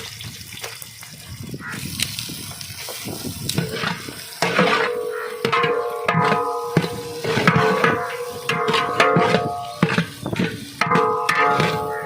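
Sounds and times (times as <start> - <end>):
onions sizzling in hot oil: 0.0 - 12.0
stirring knocks: 3.5 - 12.0.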